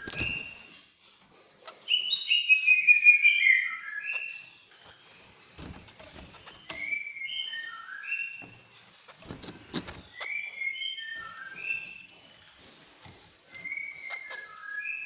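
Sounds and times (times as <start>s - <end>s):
bird singing whistled notes: 0.0s - 0.8s, 1.9s - 5.5s, 6.3s - 8.6s, 9.7s - 12.7s, 13.3s - 15.0s.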